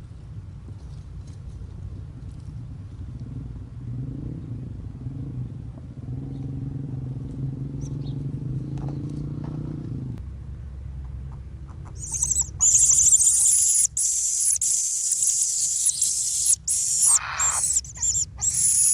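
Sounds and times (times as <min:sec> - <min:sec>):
motor engine humming: 0:10.2 - 0:18.9
faint bird chirps: 0:11.8 - 0:18.9.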